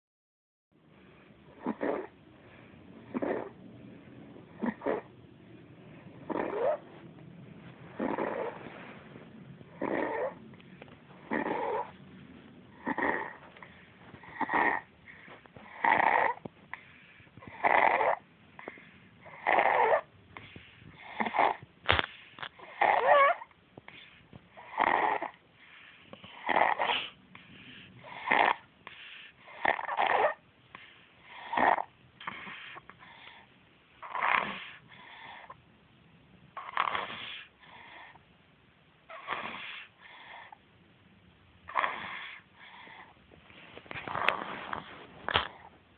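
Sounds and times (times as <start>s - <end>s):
person snoring: 8.0s - 8.6s.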